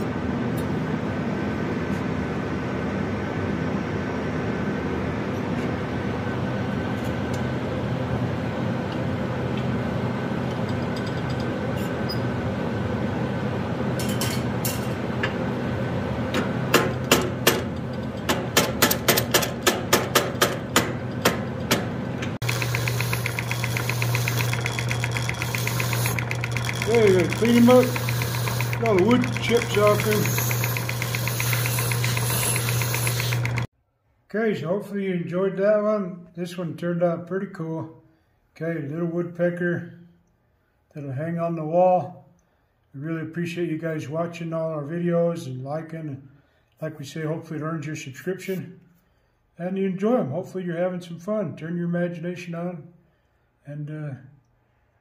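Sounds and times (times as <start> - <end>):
machine hum: 0.9 - 33.7.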